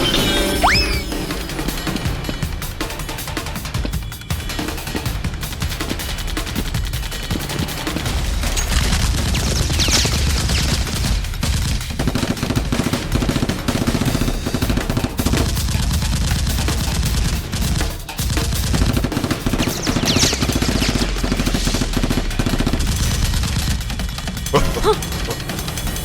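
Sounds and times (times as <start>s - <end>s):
rapid automatic gunfire: 5.6s - 24.6s.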